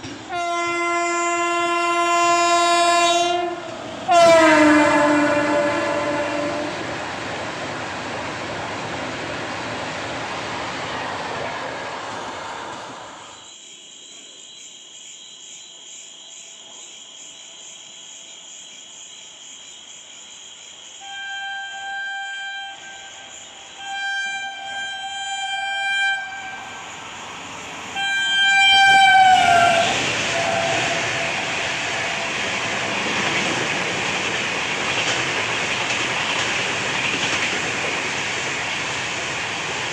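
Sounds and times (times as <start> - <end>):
locomotive horn blasts: 0.3 - 7.0, 21.0 - 27.0, 27.9 - 33.2
train rushing past: 1.3 - 13.4, 21.7 - 39.9.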